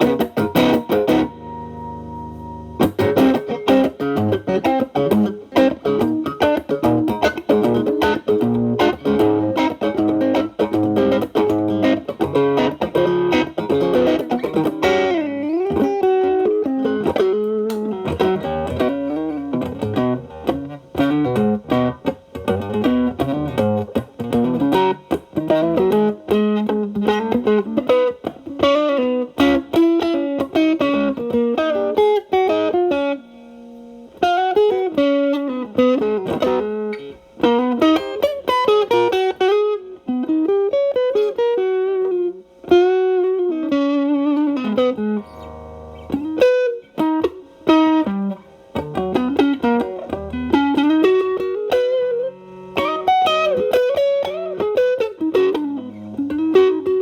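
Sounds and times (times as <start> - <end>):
lightly distorted electric guitar: 0.0 - 57.0.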